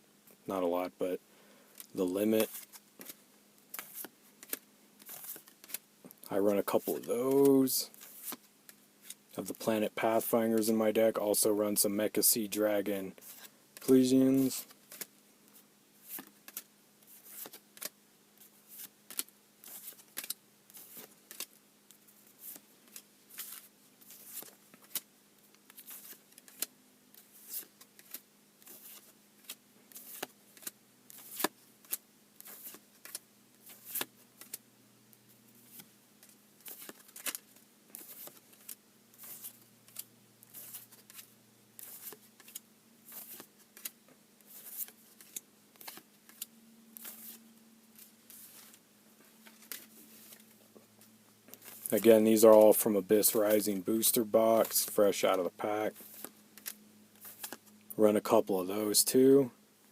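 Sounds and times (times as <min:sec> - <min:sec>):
faint steady hum: 0:00.0 - 0:59.9.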